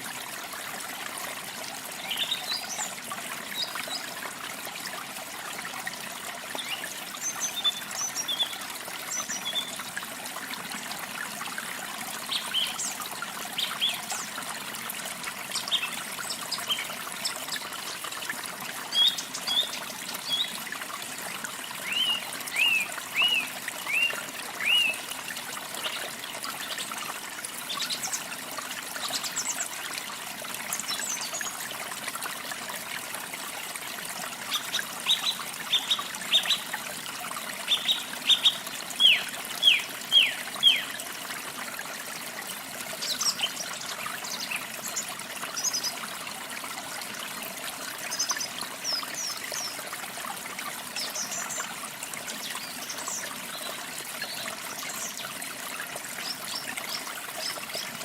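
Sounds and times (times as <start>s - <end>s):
trickling stream: 0.0s - 58.0s
small birds chirping: 21.8s - 25.0s.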